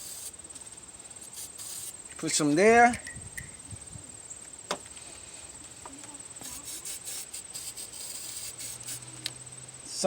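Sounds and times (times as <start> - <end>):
short hissing bursts: 0.0 - 0.4, 1.0 - 2.1, 6.4 - 9.2
cricket chirping: 0.0 - 10.0.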